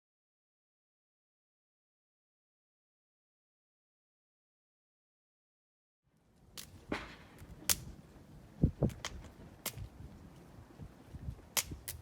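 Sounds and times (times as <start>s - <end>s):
wood fire crackling and popping: 6.2s - 12.0s.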